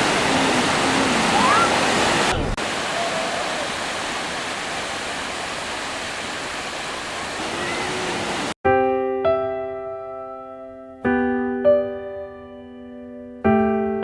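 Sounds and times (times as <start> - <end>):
waves breaking on beach: 0.0 - 8.6
piano chord: 8.6 - 14.0.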